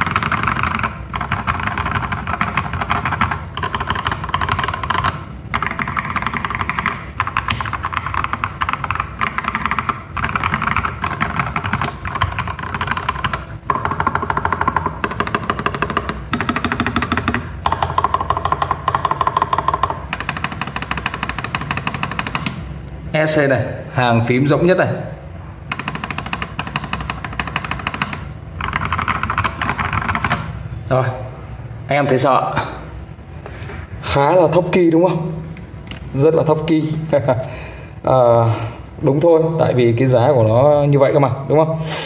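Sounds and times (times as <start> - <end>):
mechanical keyboard typing: 0.0 - 22.8, 25.6 - 30.7.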